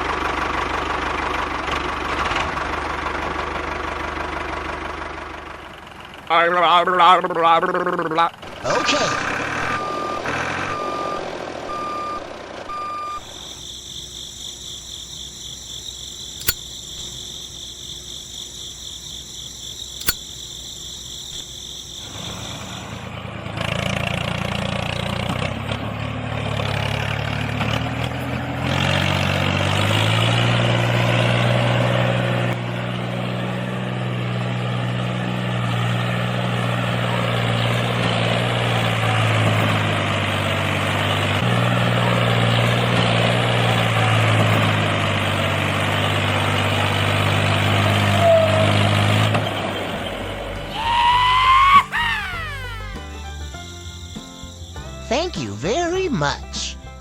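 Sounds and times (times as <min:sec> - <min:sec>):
toy truck engine sound: 0:00.0 - 0:17.2, 0:19.0 - 0:32.6, 0:50.5 - 0:53.6
reversing beeps: 0:09.6 - 0:13.3
sharp clicks: 0:16.3 - 0:17.1, 0:20.0 - 0:20.4.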